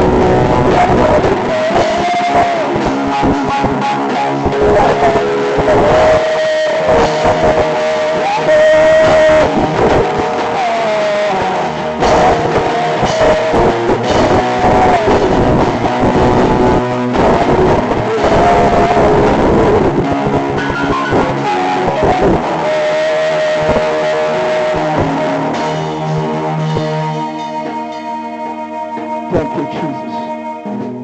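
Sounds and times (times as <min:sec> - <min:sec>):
bass: 0:00.0 - 0:31.0
electric guitar melody: 0:00.0 - 0:31.0
drum beat: 0:07.0 - 0:22.6.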